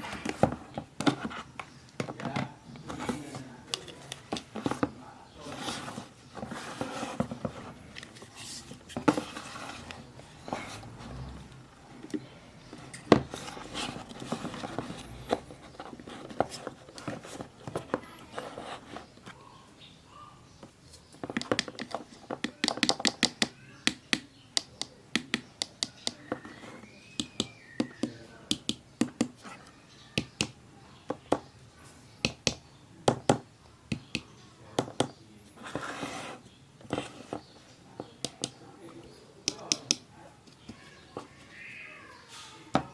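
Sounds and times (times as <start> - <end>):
plastic clicks and taps: 20.6 - 26.5, 27.2 - 29.4, 38.1 - 38.6, 39.4 - 41.3.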